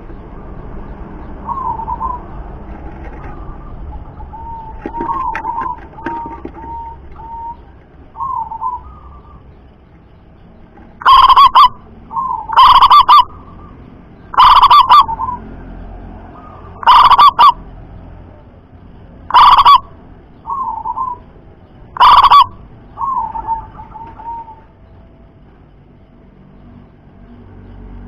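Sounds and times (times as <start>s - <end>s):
dove loud rippling coos: 1.3s - 9.5s, 11.0s - 15.7s, 16.3s - 17.7s, 19.3s - 21.3s, 22.0s - 24.7s
quieter dove cooing: 1.4s - 9.5s, 11.0s - 13.7s, 14.3s - 15.4s, 16.4s - 17.6s, 19.3s - 21.2s, 22.0s - 24.7s.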